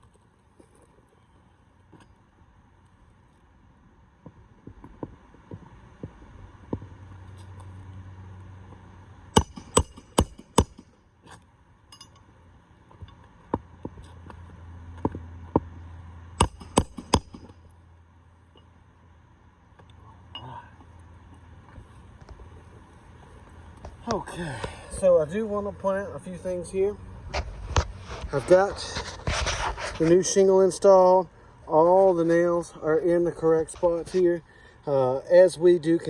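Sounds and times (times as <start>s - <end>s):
hammer hitting nails: 9.4s - 11.0s, 16.4s - 17.6s.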